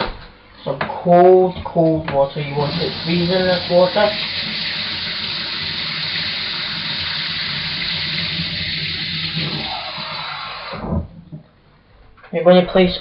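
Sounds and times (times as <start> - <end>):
tap running water into bowl: 2.5 - 10.1.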